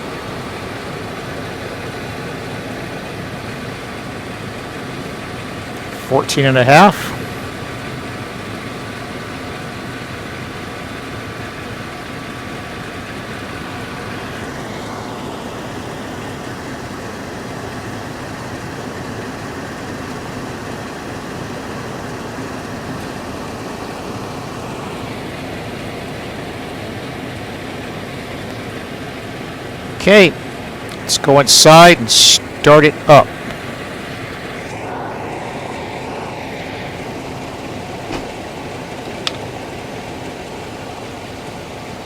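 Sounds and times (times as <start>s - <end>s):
truck engine running: 0.0s - 42.0s
thin rising and falling tone: 34.0s - 39.0s.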